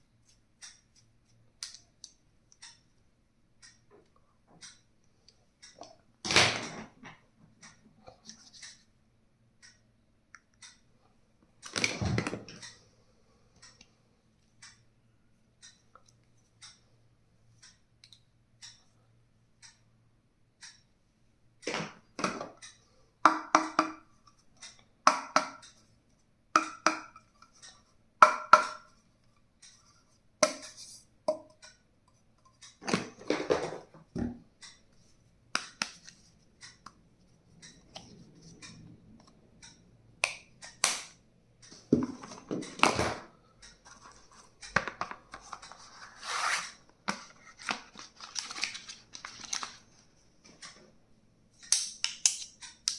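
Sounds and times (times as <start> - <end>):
stationery knocks and clicks: 23.3 - 24.0, 28.2 - 28.9.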